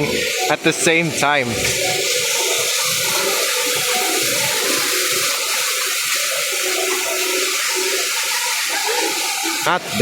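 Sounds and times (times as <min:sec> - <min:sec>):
indoor waterfall pouring: 0:00.0 - 0:10.0.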